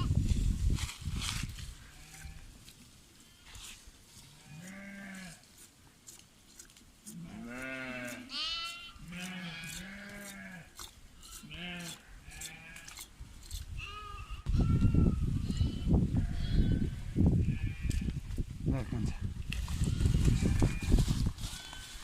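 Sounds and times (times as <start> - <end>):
sheep bleating: 4.2 - 5.4, 7.2 - 13.0.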